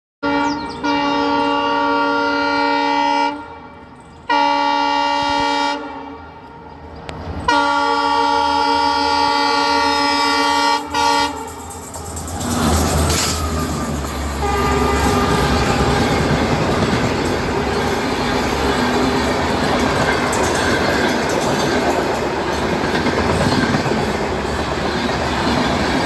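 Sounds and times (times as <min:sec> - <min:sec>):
train horn blasts: 0:00.2 - 0:11.7, 0:13.1 - 0:19.3
passing train rumble: 0:00.2 - 0:26.0.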